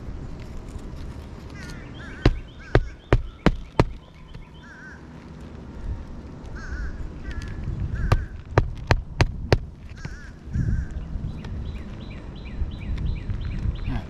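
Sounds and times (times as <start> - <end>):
wind rumble on microphone: 0.0 - 14.0
crows cawing: 1.5 - 5.1, 6.5 - 8.4, 9.9 - 11.0
high falling bird chirps: 1.6 - 5.1
sharp knocks: 2.2 - 4.4, 8.0 - 10.2.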